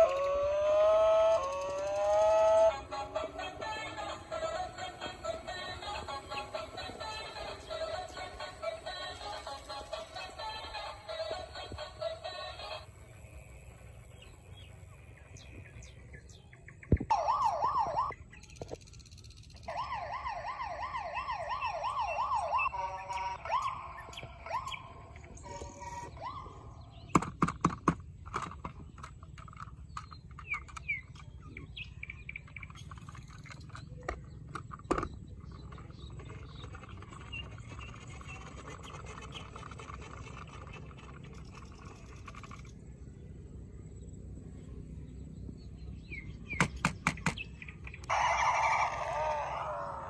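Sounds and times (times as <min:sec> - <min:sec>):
toy police siren warbling: 0:00.0 - 0:12.8, 0:17.1 - 0:18.2, 0:19.6 - 0:27.0, 0:48.0 - 0:50.0
plastic clicks and knocks: 0:27.1 - 0:31.3.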